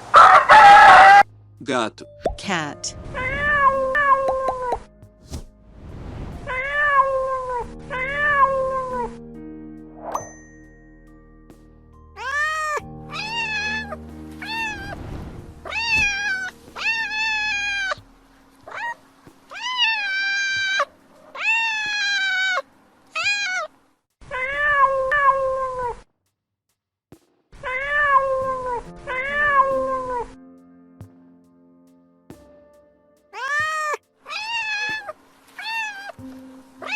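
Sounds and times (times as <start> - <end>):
cat meowing: 6.5 - 9.0, 12.2 - 15.0, 15.6 - 18.0, 18.7 - 22.6, 23.2 - 26.0, 27.6 - 29.7, 33.4 - 36.2.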